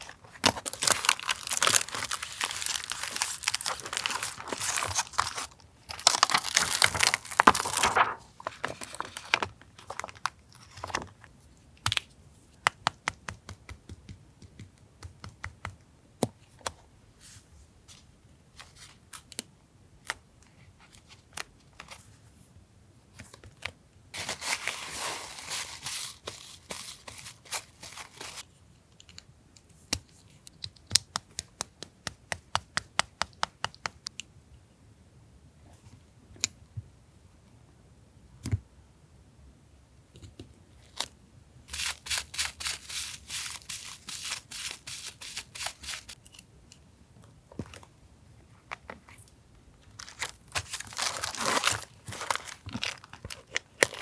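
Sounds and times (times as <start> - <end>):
paper tearing and crinkling: 0.3 - 9.4, 41.7 - 46.2, 50.0 - 53.1
clicks and taps of stationery: 11.8 - 16.8, 29.0 - 34.3.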